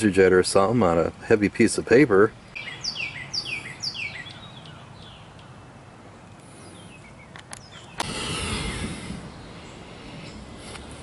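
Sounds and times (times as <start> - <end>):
faint songbird chirps: 2.4 - 8.0, 9.2 - 10.6
burst of rustling: 8.0 - 9.4.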